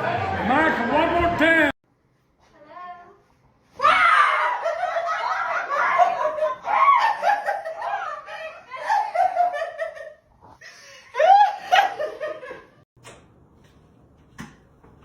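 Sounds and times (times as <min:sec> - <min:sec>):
people laughing: 0:04.3 - 0:10.2, 0:10.8 - 0:12.8.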